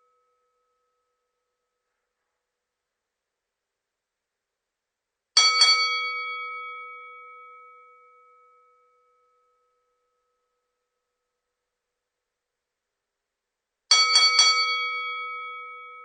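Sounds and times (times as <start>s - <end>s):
boxing ring bell ringing: 5.4s - 9.4s, 13.9s - 16.0s.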